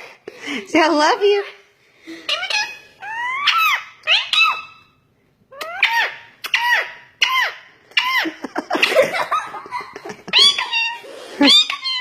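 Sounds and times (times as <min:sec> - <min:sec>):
parrot calling: 0:01.4 - 0:09.0, 0:10.3 - 0:12.0.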